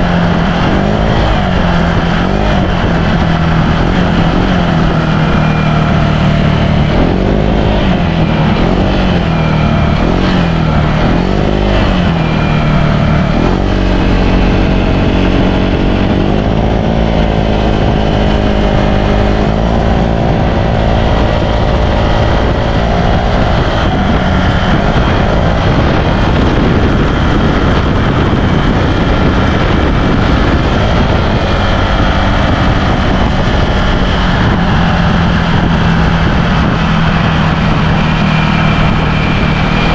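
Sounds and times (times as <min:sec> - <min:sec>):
loud rushing noise: 0:00.0 - 0:39.9
scooter engine revving: 0:00.0 - 0:39.9.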